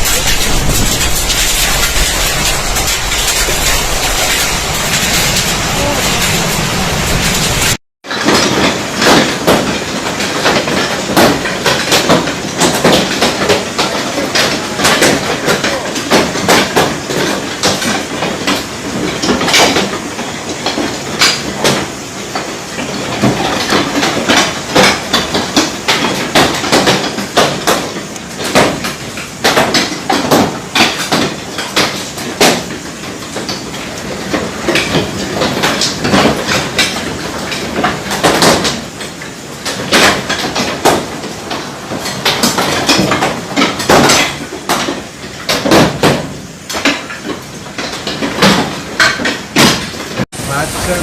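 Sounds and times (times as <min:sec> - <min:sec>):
steady rushing noise: 0:00.0 - 0:07.8, 0:50.1 - 0:51.0
hailstones clattering: 0:00.0 - 0:51.0.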